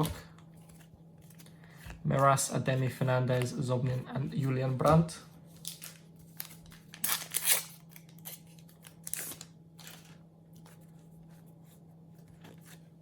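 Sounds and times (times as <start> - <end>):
foil packet tearing: 5.6 - 10.2.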